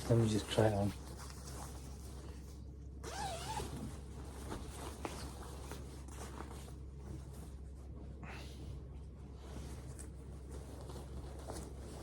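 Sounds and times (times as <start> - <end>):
fabric rustling: 0.0 - 8.2, 8.8 - 12.0
jacket zip rasping: 3.0 - 3.9.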